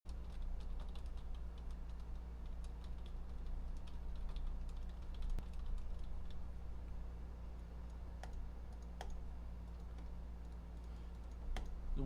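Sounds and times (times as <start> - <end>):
keyboard typing: 0.1 - 6.5, 7.6 - 11.8
low electrical hum: 0.1 - 12.0.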